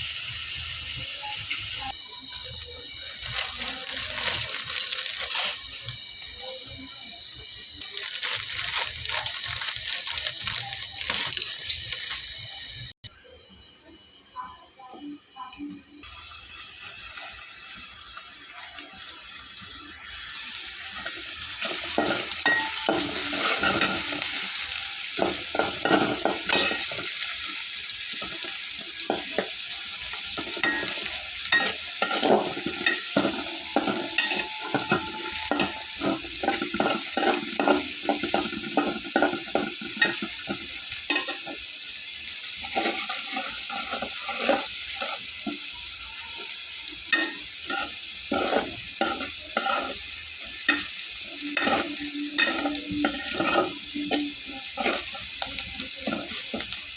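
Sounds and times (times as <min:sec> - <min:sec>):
food sizzling in a pan: 0:00.0 - 0:56.9
spatula scraping a pan: 0:03.2 - 0:05.7, 0:07.9 - 0:12.3, 0:21.0 - 0:27.4, 0:28.1 - 0:41.6, 0:42.5 - 0:45.7, 0:47.0 - 0:56.9.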